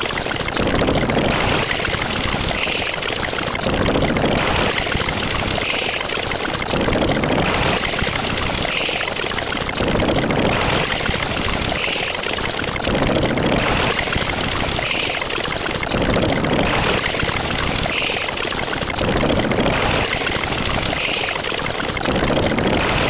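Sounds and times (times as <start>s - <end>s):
rushing water noise: 0.0s - 23.0s.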